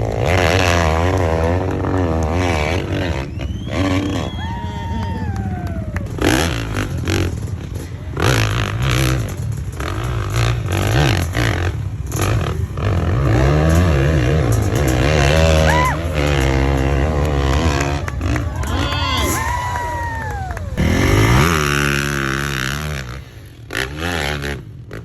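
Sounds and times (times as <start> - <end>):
motorcycle engine revving: 0.0 - 25.0
sharp cracks: 13.7 - 23.8.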